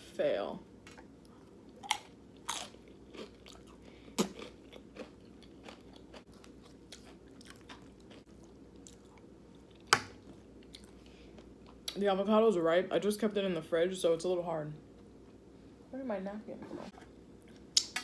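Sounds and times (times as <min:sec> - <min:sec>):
corn chips crunching: 0:01.8 - 0:08.2.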